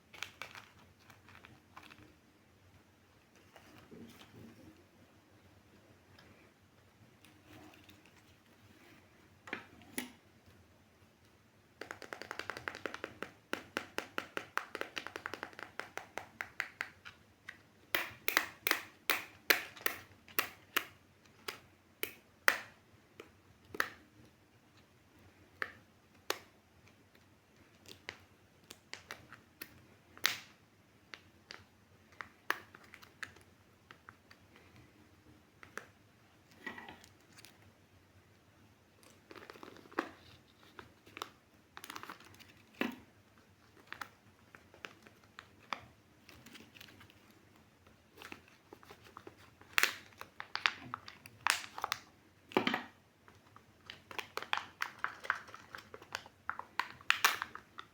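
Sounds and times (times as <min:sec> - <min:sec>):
toys and packaging clicking: 0:00.1 - 0:02.2, 0:48.1 - 0:57.9.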